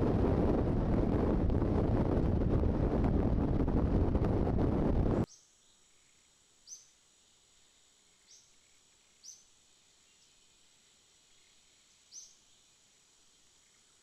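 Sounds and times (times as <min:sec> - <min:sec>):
wind buffeting microphone: 0:00.0 - 0:05.3.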